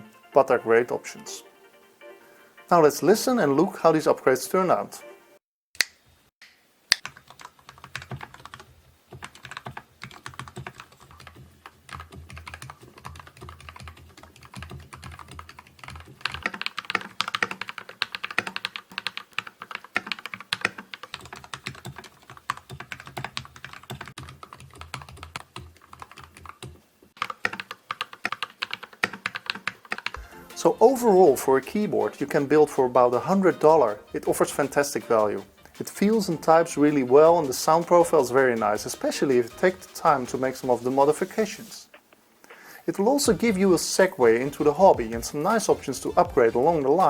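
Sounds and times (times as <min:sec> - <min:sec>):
fast mechanical keyboard typing: 0:06.9 - 0:30.2.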